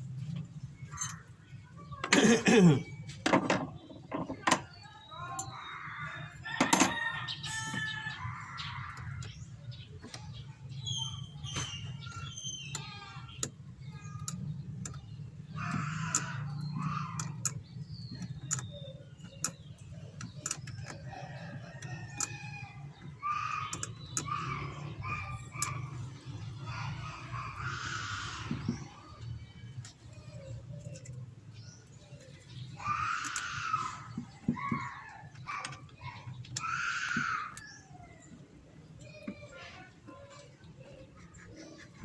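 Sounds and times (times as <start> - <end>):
sharp clicks and knocks: 3.1 - 4.8, 11.5 - 26.5
rooster crowing: 6.4 - 8.2
chickens clucking: 38.4 - 42.0.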